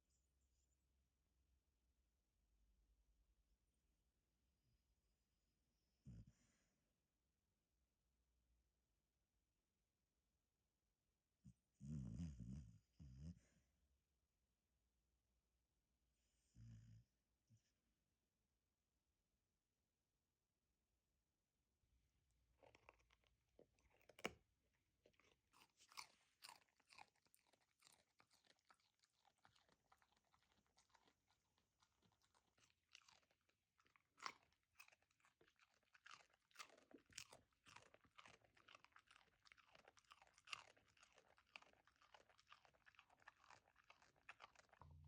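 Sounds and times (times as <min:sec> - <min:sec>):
dog chewing crunches: 0:22.6 - 0:24.4, 0:25.0 - 0:44.8.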